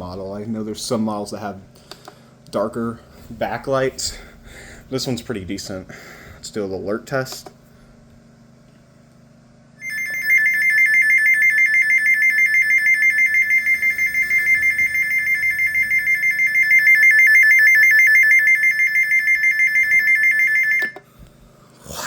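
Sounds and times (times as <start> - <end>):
high-pitched two-tone alarm: 9.8 - 21.0.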